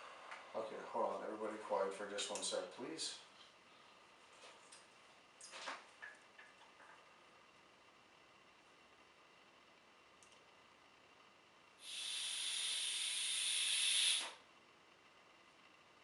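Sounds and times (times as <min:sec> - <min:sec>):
steady hiss: 0:11.8 - 0:14.4.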